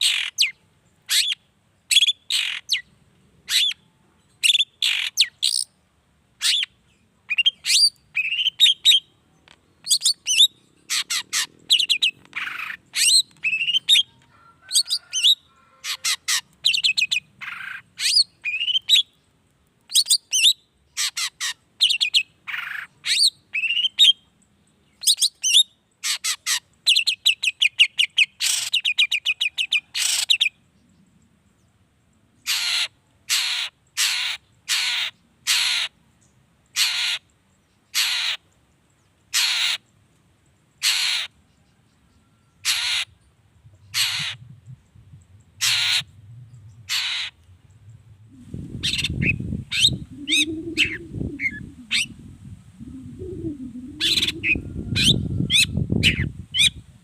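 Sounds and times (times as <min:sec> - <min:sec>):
bird harsh chattering call: 0:00.0 - 0:02.8, 0:04.4 - 0:05.7, 0:09.8 - 0:19.0, 0:20.0 - 0:24.0, 0:25.0 - 0:30.5, 0:32.4 - 0:36.0, 0:36.7 - 0:37.3, 0:37.9 - 0:38.5, 0:39.3 - 0:39.9, 0:40.8 - 0:41.4, 0:42.6 - 0:52.2, 0:52.9 - 0:56.8
low rumbling noise: 0:43.1 - 0:57.0.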